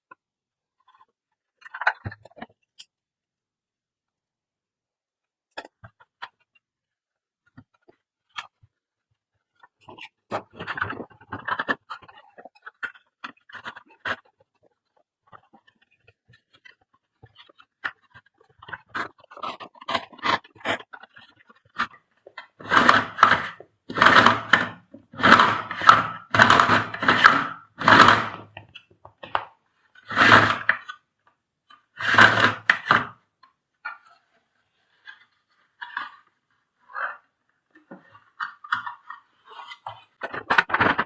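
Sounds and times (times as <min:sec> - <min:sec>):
scraping and rubbing strokes: 0:22.6 - 0:28.5, 0:30.0 - 0:30.9, 0:32.0 - 0:33.2.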